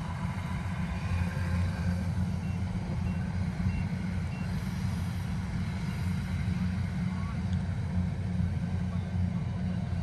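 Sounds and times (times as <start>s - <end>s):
vehicle engine running: 0.0s - 10.0s
reversing alarm beeps: 2.4s - 4.6s.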